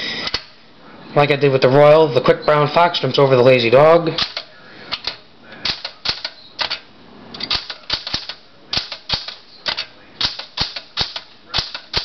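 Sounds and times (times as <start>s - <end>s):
typewriter key strikes: 5.0s - 6.8s, 7.5s - 12.0s.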